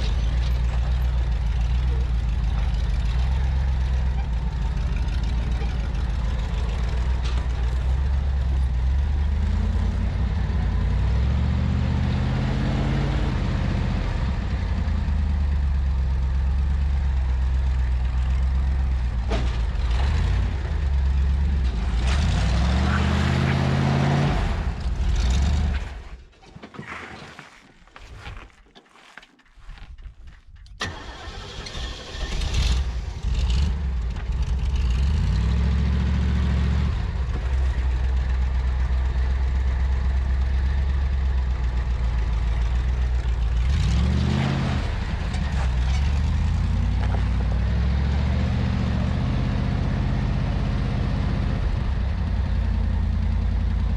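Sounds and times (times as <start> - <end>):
car engine revving: 19.8 - 26.0, 43.4 - 51.7.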